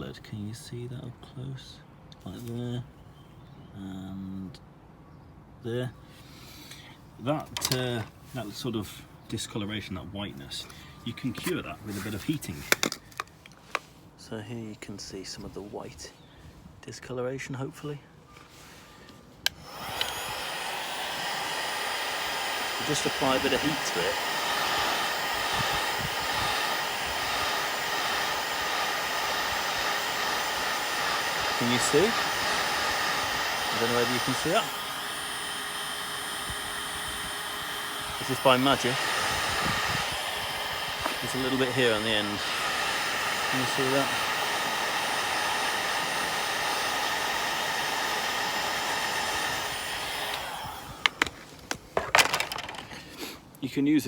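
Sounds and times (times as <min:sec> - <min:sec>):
hot-air blower running: 0:19.4 - 0:53.2.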